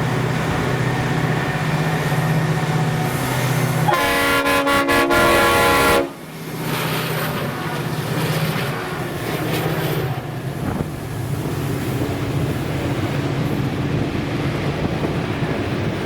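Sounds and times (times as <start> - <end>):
locomotive engine drone: 0.0 - 16.0
chime locomotive horn: 3.9 - 6.2
wind on microphone: 10.0 - 16.0.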